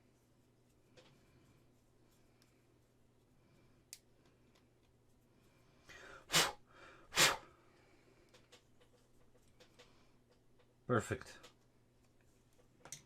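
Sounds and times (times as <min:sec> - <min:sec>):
forceful breath bursts: 0:05.9 - 0:07.6.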